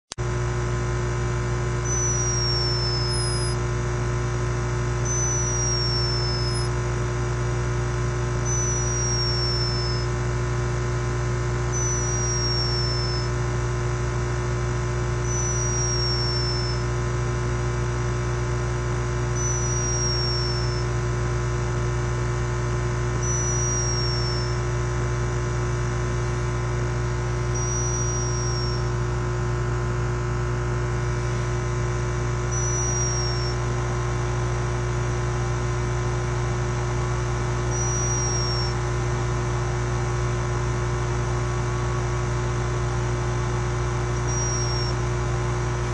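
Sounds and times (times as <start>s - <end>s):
steady low hum: 0.2s - 45.9s
whistling snore: 1.8s - 3.6s, 5.0s - 6.7s, 8.4s - 10.1s, 11.7s - 13.3s, 15.2s - 16.9s, 19.4s - 21.0s, 23.2s - 24.6s, 27.4s - 28.9s, 32.5s - 33.7s, 37.7s - 38.8s, 44.1s - 45.0s.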